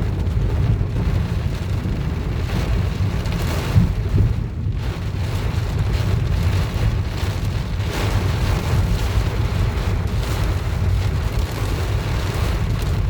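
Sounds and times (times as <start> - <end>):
deep rumble: 0.0 - 13.0
heavy rain on car body: 0.0 - 13.0.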